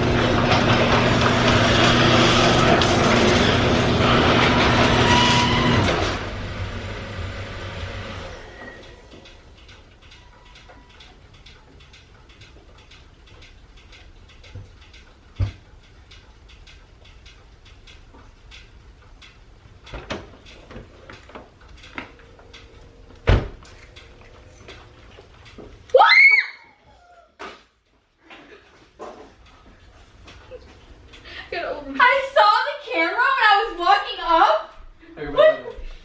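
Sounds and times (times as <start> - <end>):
car engine and tyres: 0.0 - 9.6
faint ticking: 8.0 - 26.0.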